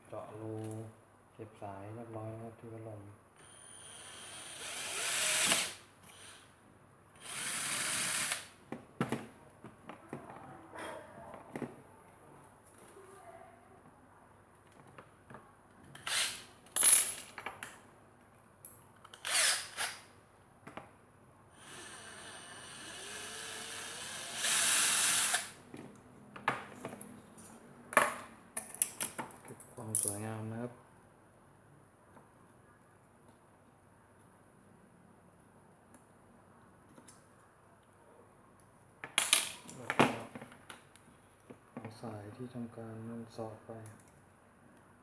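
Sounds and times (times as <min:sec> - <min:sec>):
power drill running: 0:03.4 - 0:06.4, 0:07.2 - 0:08.5, 0:16.0 - 0:16.5, 0:19.2 - 0:20.0, 0:21.6 - 0:25.6.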